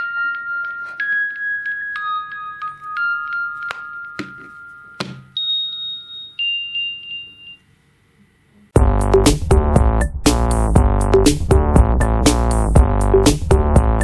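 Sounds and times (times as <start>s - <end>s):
bell-like chime melody: 0.0s - 7.6s
electronic alarm tune with beat: 8.8s - 14.0s.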